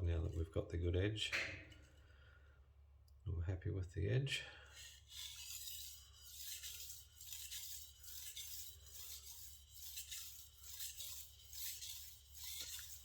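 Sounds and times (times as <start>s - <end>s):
blade scraping on whetstone: 4.7s - 13.0s.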